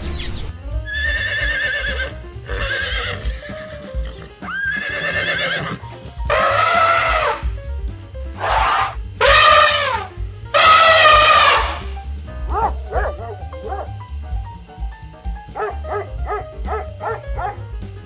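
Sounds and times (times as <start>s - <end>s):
music with low beat: 0.0s - 5.1s, 5.8s - 18.0s
horse whinnying: 0.9s - 7.5s, 8.4s - 11.9s, 15.6s - 17.6s.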